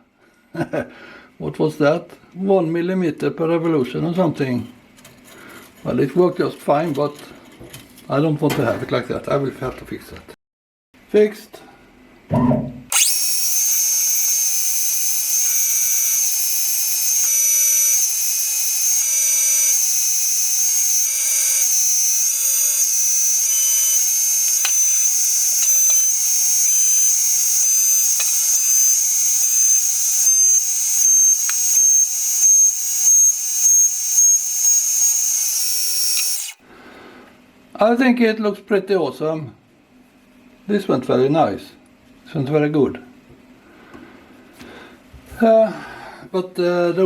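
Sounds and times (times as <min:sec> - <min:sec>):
metal lathe cutting whine: 0:12.9 - 0:36.6.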